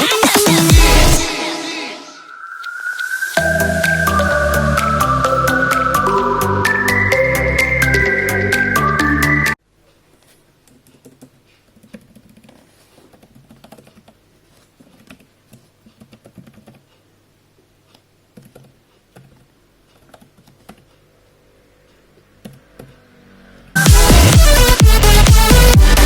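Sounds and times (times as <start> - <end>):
quiet keyboard clicks: 9.8 - 17.1, 17.7 - 21.1, 21.9 - 23.1.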